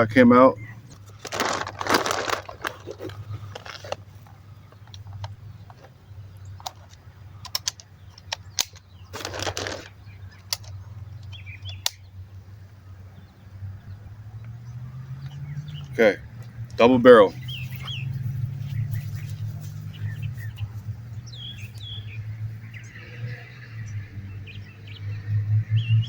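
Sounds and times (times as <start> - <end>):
handling rustling: 0.9 - 10.8
sharp clicks: 4.7 - 12.1.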